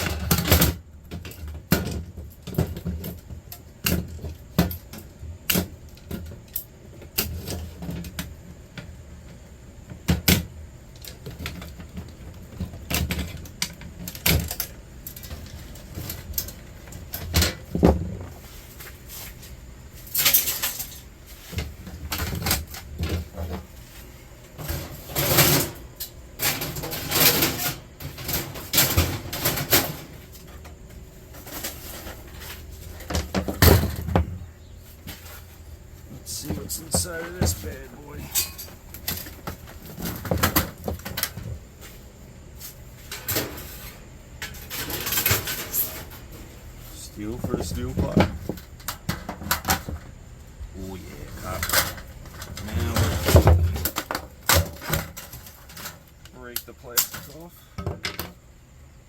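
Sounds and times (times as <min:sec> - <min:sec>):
scrap metal clinking and clattering: 0:11.0 - 0:42.0, 0:42.6 - 0:50.1, 0:51.2 - 0:58.4.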